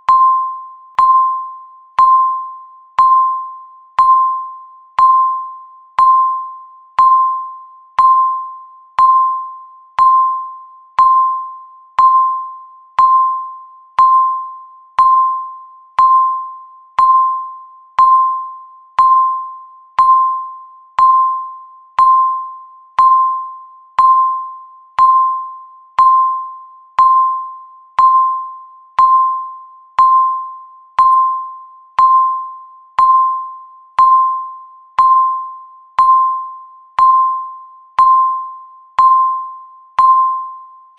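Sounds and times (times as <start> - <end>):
electronic timer beeps: 0.0 - 40.9.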